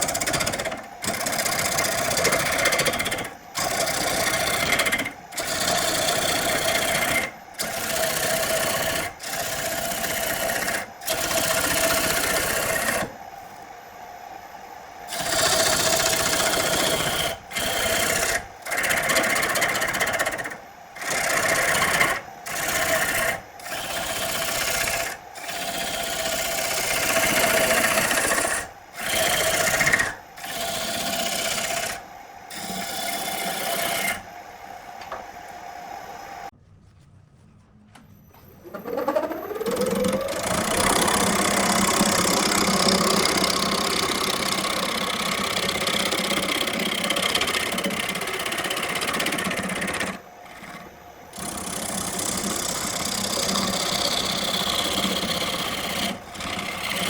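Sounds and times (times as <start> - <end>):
power tool scraping wood: 0.0 - 13.2, 15.1 - 34.2, 38.7 - 57.0
motor whine: 38.1 - 47.9.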